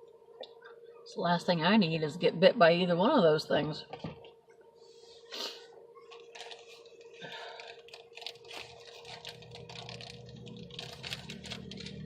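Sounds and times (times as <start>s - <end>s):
small clicks and crackles: 6.0s - 12.0s
motorboat engine drone: 6.2s - 12.0s.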